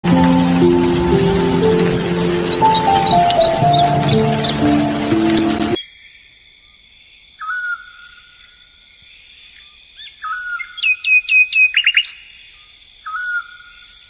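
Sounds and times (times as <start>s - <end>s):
music: 0.0s - 5.8s
birds calling: 0.1s - 5.8s.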